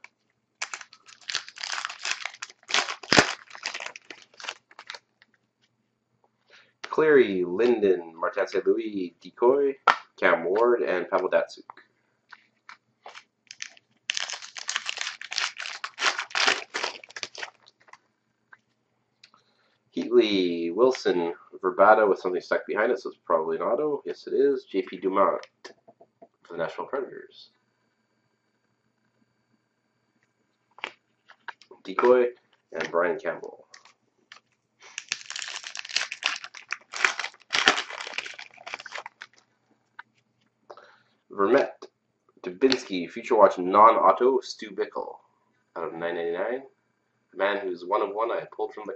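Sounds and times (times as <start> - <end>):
foil wrapper crinkling and tearing: 0.0 - 5.2, 13.1 - 18.0, 33.8 - 39.4.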